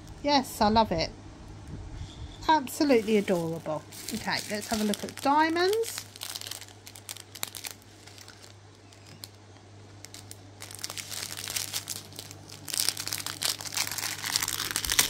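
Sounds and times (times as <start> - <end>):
plastic packets crinkling: 2.8 - 15.0.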